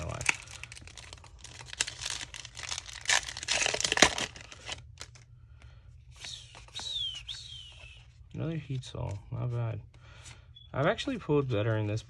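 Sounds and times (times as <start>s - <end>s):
foil wrapper crinkling and tearing: 0.0s - 5.2s
cards rustling and clicking: 6.2s - 8.0s.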